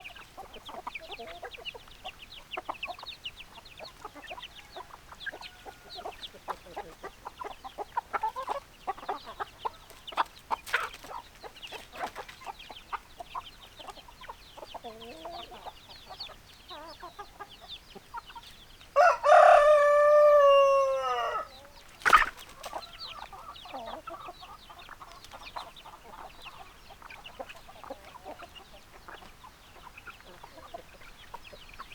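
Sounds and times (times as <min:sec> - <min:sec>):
chickens clucking: 0:00.0 - 0:31.9
rooster crowing: 0:19.0 - 0:21.6.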